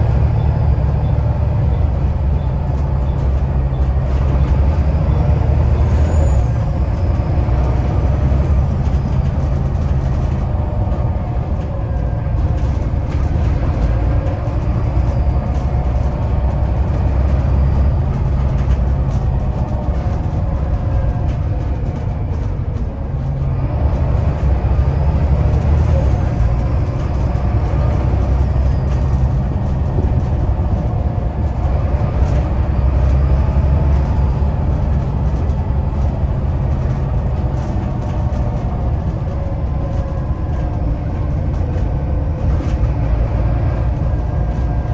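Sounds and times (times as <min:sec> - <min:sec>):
diesel engine droning under load: 0:00.0 - 0:44.9.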